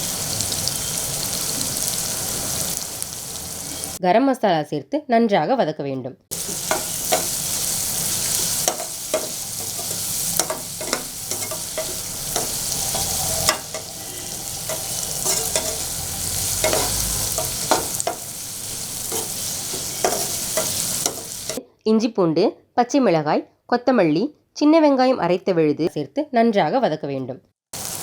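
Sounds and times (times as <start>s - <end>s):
food sizzling in oil: 0.0s - 4.0s, 6.3s - 21.6s, 27.8s - 28.0s
spoon scraping a pan: 6.3s - 21.6s.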